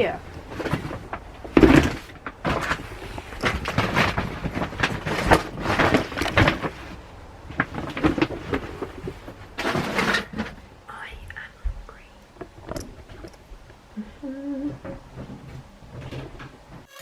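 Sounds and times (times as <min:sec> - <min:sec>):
rustling and scraping of bags: 0:00.2 - 0:10.7
boxes bumping: 0:00.4 - 0:10.6.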